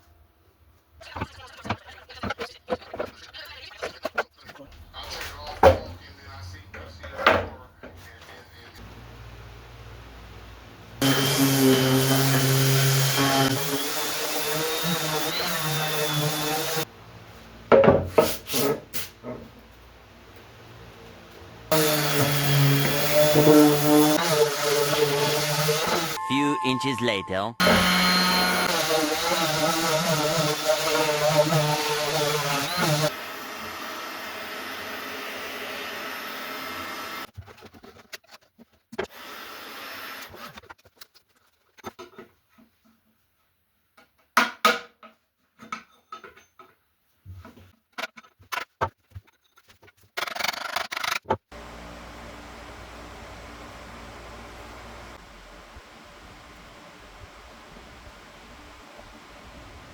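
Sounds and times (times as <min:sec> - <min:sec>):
power tool motor running: 0:11.0 - 0:16.8, 0:21.7 - 0:26.2, 0:27.6 - 0:37.2
background music: 0:26.2 - 0:27.6.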